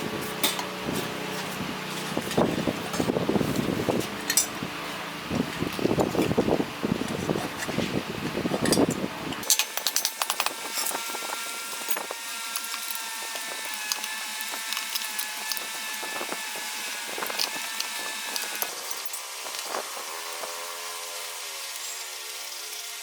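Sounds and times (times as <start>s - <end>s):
small motor whine: 0.0s - 23.0s.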